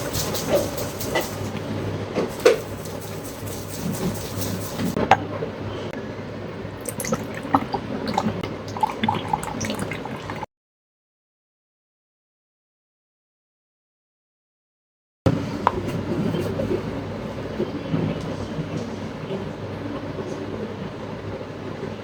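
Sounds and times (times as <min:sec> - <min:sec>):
liquid sloshing: 0:06.8 - 0:10.5.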